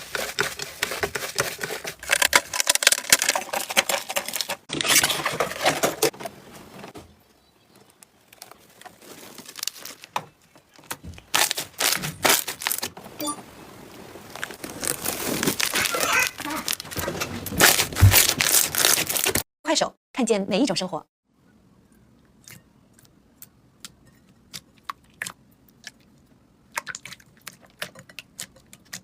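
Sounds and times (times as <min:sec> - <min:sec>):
slime squishing and crackling: 0:08.3 - 0:10.2, 0:11.3 - 0:12.9, 0:14.4 - 0:19.4.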